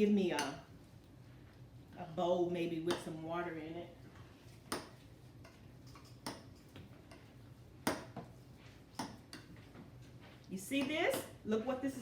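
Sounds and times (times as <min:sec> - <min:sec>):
kitchenware clicks and taps: 0:04.7 - 0:08.3, 0:08.9 - 0:09.6.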